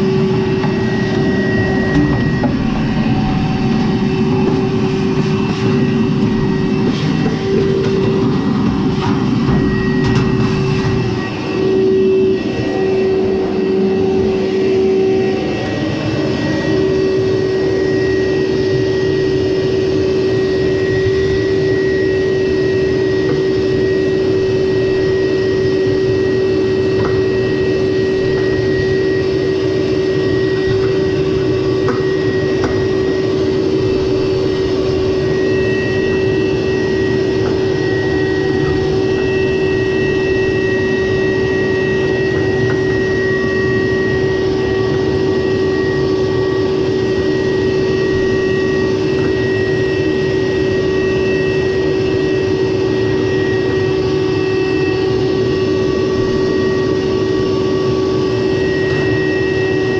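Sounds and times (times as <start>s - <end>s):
low rumble: 0.0s - 15.0s
dryer motor hum: 0.0s - 59.9s.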